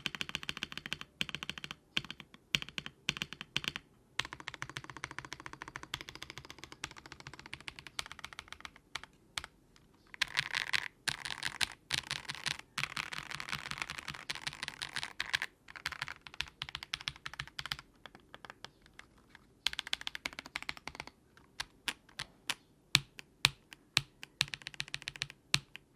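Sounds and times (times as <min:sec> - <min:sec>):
mechanical keyboard typing: 0:00.0 - 0:25.9.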